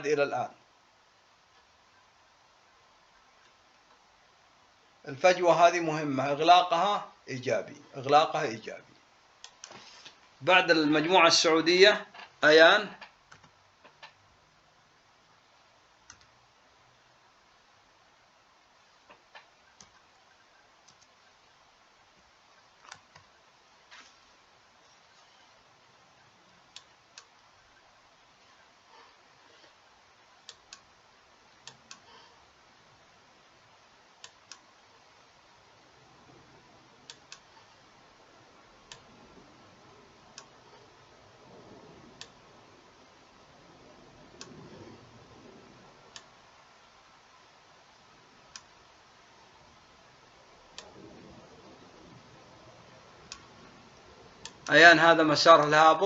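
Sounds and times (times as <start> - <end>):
faint steady hiss: 0.0 - 56.0
computer mouse clicks: 9.4 - 10.2, 13.0 - 14.2, 16.0 - 16.3, 19.1 - 20.2, 20.8 - 21.2, 22.8 - 23.3, 31.6 - 32.3, 34.2 - 34.7, 37.1 - 37.7, 38.9 - 39.1, 44.3 - 44.9, 48.5 - 48.8, 53.2 - 53.5.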